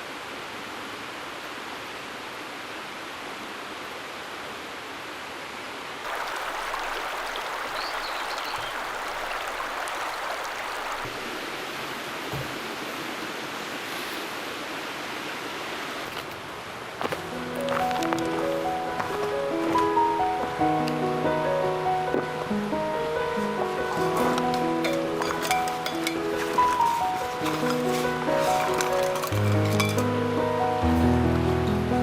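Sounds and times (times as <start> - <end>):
music: 17.2 - 32.0.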